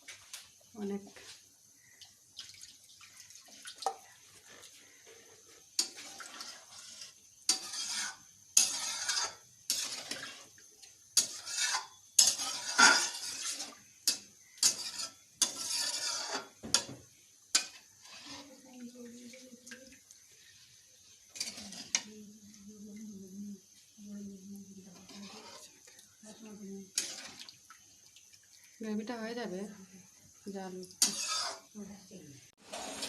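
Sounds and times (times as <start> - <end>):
spoon scraping a pan: 4.4 - 18.6, 20.4 - 22.6, 24.8 - 26.0, 26.8 - 27.6, 30.9 - 31.8, 32.6 - 33.0.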